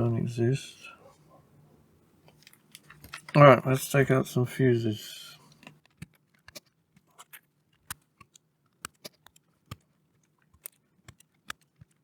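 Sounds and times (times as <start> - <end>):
small plastic and metal clicks: 5.5 - 12.0.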